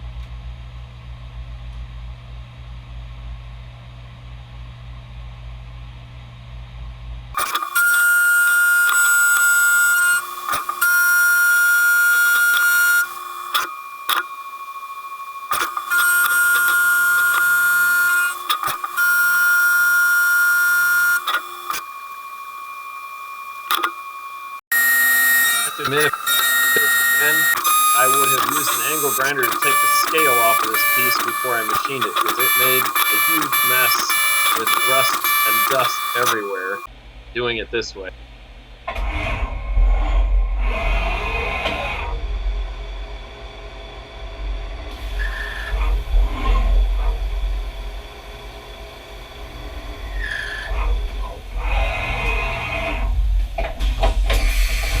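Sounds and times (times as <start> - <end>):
milling machine high whine: 7.4 - 37.8, 40.0 - 55.0
steady machine hum: 8.6 - 55.0
milling machine rumble and cutting: 15.5 - 21.8, 24.7 - 36.9
sharp clicks: 23.7 - 24.0, 24.8 - 36.9.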